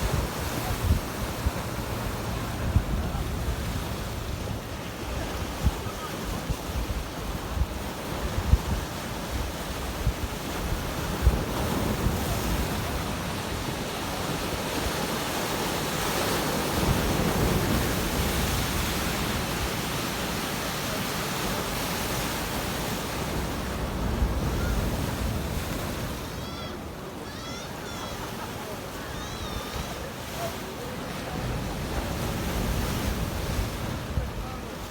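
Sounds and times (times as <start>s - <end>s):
wind buffeting microphone: 0.0s - 15.1s
sea waves breaking: 0.0s - 34.9s.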